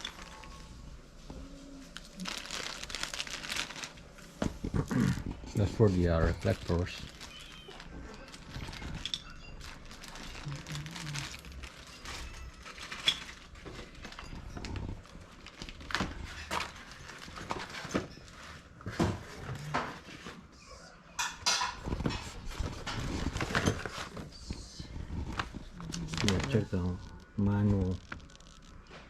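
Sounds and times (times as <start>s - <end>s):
packaging being handled: 1.8s - 4.9s, 5.6s - 18.4s, 21.9s - 29.0s.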